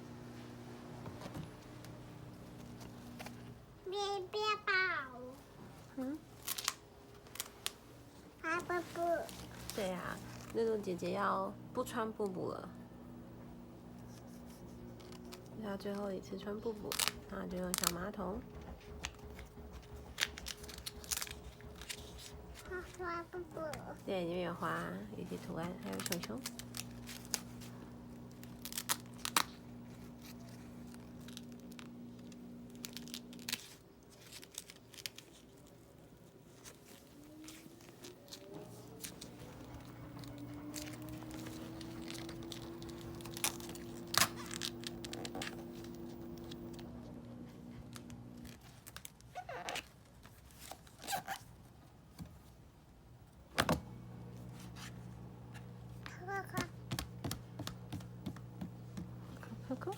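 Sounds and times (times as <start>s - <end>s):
steady low hum: 5.4s - 33.6s, 38.5s - 48.7s, 53.5s - 59.9s
clicks and crinkling handling: 6.3s - 7.9s, 24.6s - 51.5s.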